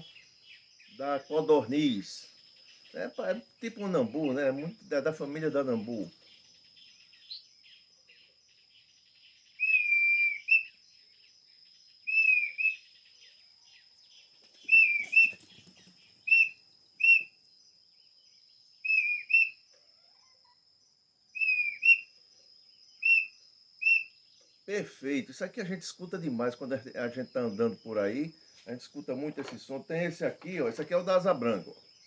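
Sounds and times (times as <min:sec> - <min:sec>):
bird-call whistle blown: 0:09.6 - 0:10.8, 0:12.1 - 0:12.8, 0:14.7 - 0:15.4, 0:16.3 - 0:17.4, 0:18.8 - 0:19.6, 0:21.4 - 0:22.1, 0:23.0 - 0:24.2.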